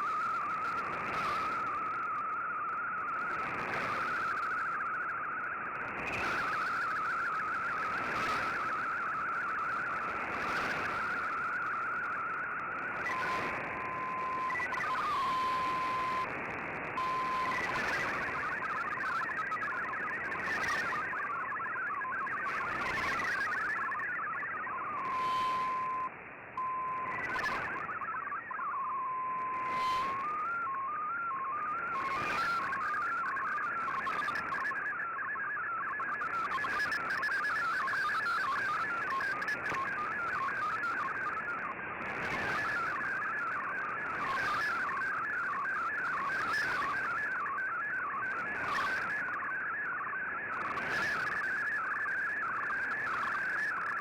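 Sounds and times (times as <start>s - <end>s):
digital data tones hopping: 17.0s - 41.4s.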